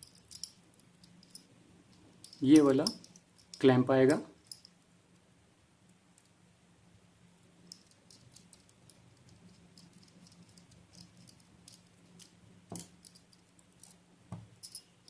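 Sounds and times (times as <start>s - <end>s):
low steady hum: 0.0s - 15.0s
small metal hardware clicking: 7.7s - 14.0s.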